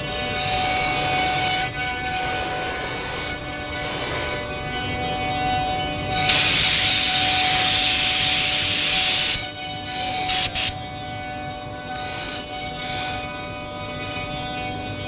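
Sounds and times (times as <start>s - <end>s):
router spindle whining: 0.0s - 15.0s
cutter hissing through wood: 6.2s - 9.5s, 10.2s - 10.8s.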